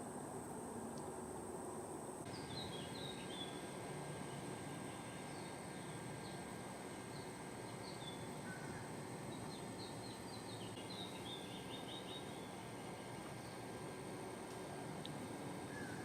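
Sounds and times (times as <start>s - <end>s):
steady hiss: 0.0s - 16.0s
faint high chirping calls: 2.3s - 13.7s, 15.6s - 16.0s.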